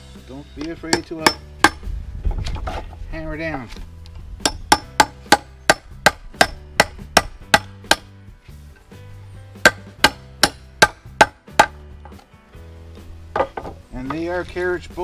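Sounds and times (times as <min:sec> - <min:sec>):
hammer striking bolt heads: 0:04.4 - 0:08.0.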